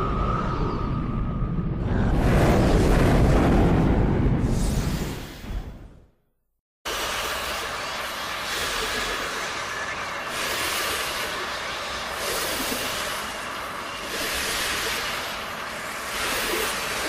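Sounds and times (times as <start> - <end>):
dense rushing rumble: 0.0 - 5.9.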